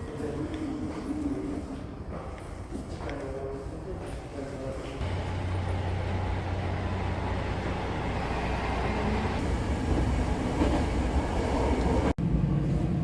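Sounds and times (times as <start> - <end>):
train rumbling: 5.0 - 13.0.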